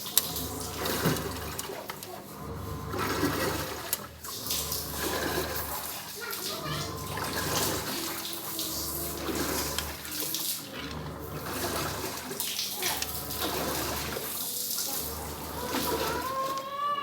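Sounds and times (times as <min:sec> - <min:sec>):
water running and splashing: 0:00.0 - 0:17.0.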